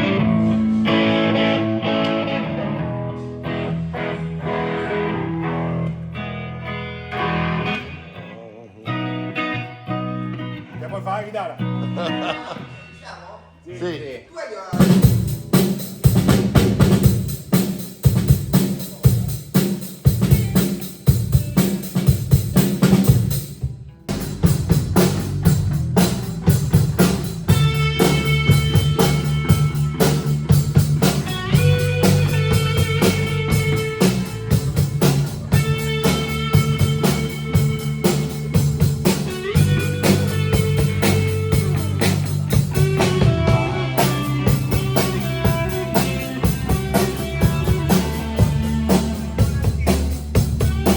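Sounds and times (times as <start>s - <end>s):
band playing groove: 0.0s - 6.0s, 8.9s - 50.9s
drum kit beat: 14.7s - 50.9s.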